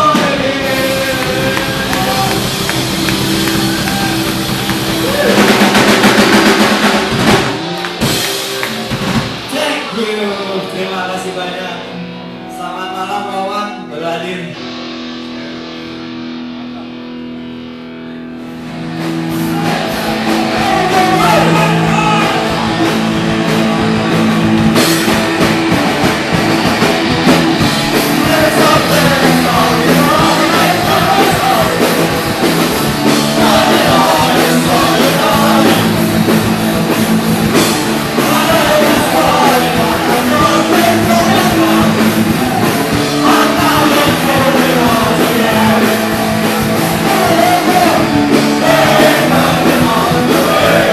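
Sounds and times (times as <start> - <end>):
shouted singing: 0.0 - 6.6, 19.3 - 24.8, 27.8 - 50.9
drum kit: 0.0 - 11.6, 14.5 - 50.9
distorted electric guitar: 0.0 - 50.9.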